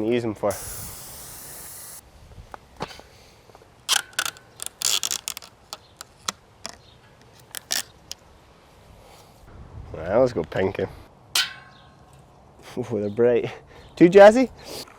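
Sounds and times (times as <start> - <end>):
steady hiss: 0.0 - 2.2
tools and bike parts clicking: 3.9 - 8.2.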